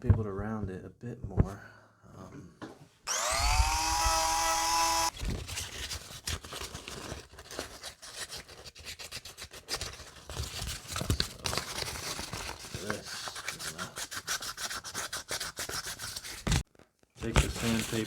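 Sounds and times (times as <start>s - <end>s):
rotary tool whine: 3.1s - 5.1s.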